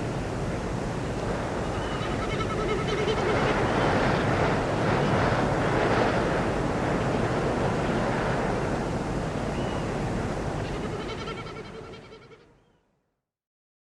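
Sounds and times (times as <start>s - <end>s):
steady rushing noise: 0.0s - 12.2s
faint bird chirps: 9.5s - 9.9s, 10.6s - 12.8s.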